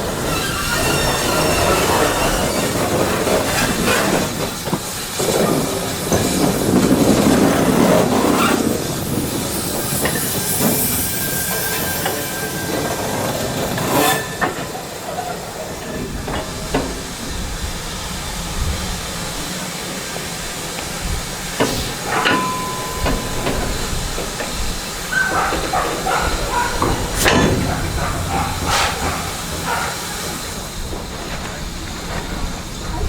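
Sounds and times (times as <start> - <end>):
steam locomotive hissing: 0.0 - 33.0
sharp metallic clanks: 21.6 - 30.7.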